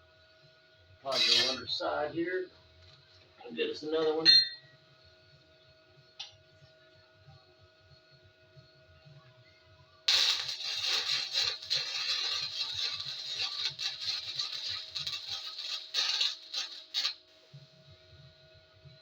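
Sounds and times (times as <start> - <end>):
arc welder crackling: 1.1 - 1.6, 10.1 - 17.6.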